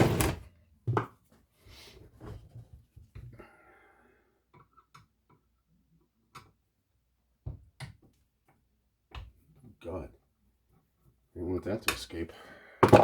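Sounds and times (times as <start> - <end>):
faint clicks and taps of tool: 6.3 - 6.6.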